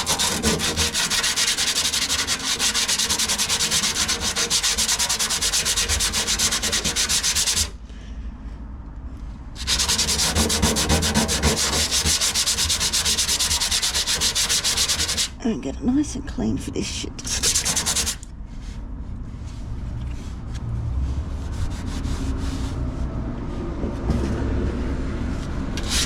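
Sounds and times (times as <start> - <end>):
sandpaper rubbing on metal: 0.0 - 7.8, 9.6 - 15.4, 17.2 - 18.2, 21.4 - 22.8, 25.8 - 26.0.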